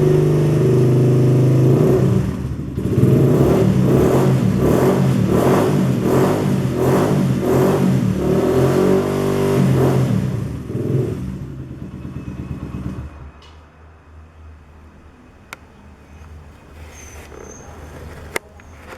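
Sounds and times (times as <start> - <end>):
motorcycle engine revving: 0.0 - 13.4.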